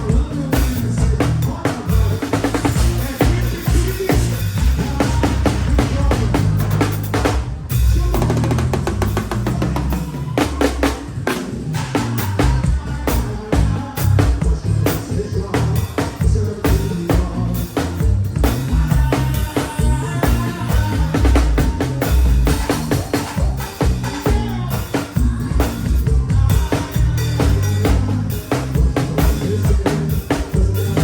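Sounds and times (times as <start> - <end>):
deep bass line: 0.0 - 31.0.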